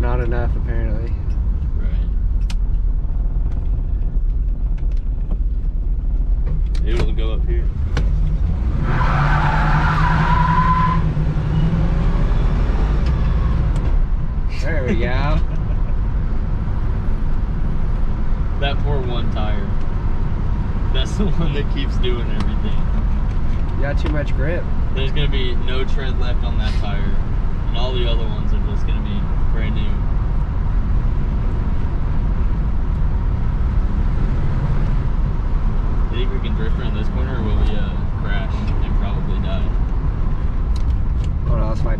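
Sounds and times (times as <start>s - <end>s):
car engine at full throttle: 0.0s - 41.9s
tire squealing on pavement: 7.7s - 13.7s.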